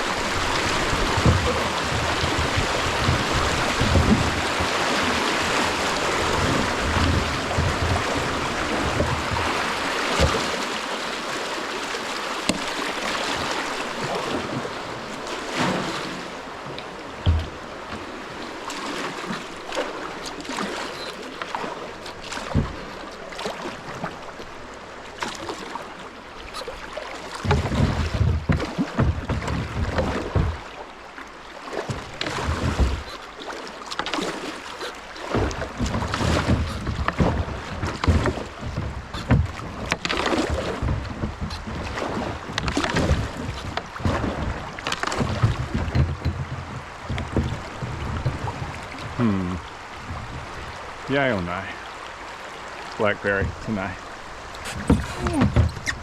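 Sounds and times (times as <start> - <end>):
paddle splashing in water: 0.0 - 56.0
knocks against kayak hull: 0.4 - 10.6, 12.4 - 14.6, 15.6 - 18.1, 21.0 - 23.0, 27.4 - 30.7, 31.8 - 33.2, 33.9 - 50.8, 53.3 - 56.0.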